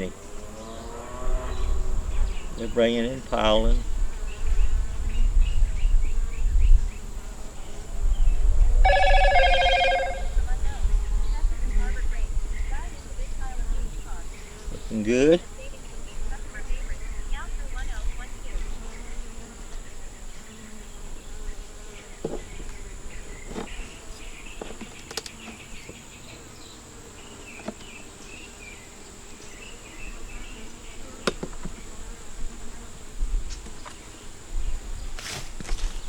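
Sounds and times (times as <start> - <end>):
bees buzzing: 12.9 - 35.2.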